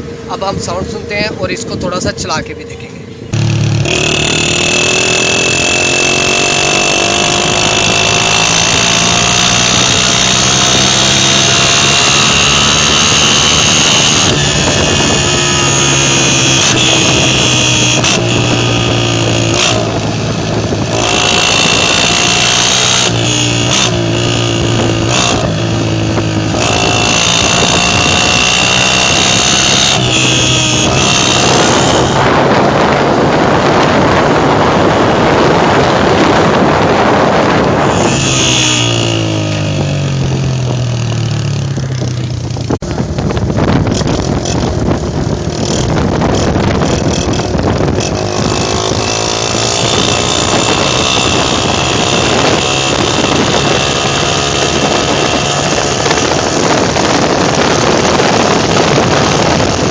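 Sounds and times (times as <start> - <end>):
wind noise on microphone: 0.0 - 59.9
motorcycle engine revving: 3.3 - 59.9.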